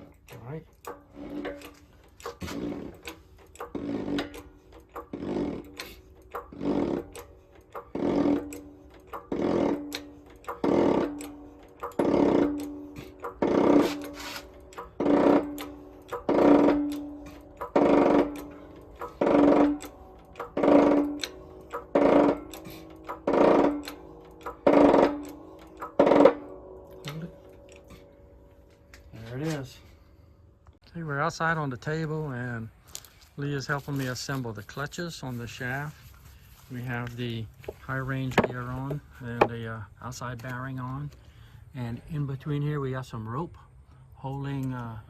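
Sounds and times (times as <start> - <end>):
metal-on-metal strikes ringing: 8.2 - 30.2.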